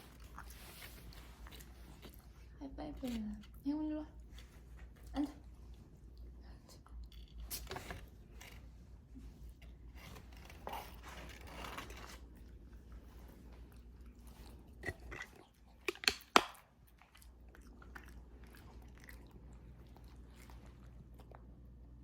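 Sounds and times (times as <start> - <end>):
dog crunching a treat: 10.0 - 21.7.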